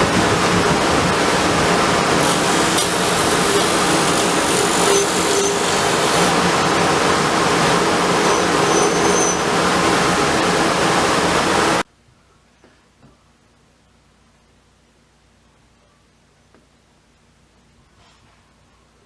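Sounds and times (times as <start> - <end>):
woodworking machine running: 0.0 - 11.8.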